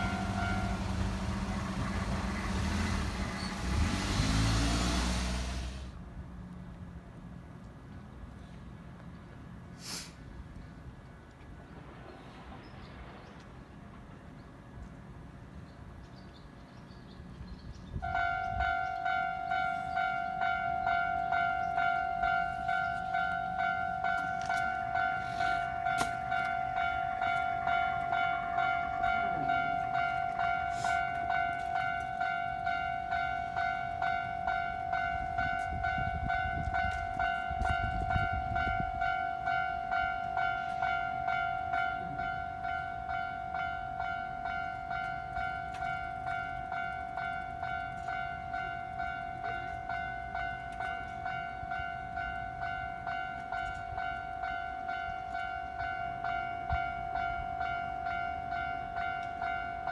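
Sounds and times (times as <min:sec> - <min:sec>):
level-crossing warning bell: 0:00.0 - 0:04.3, 0:18.0 - 0:59.9.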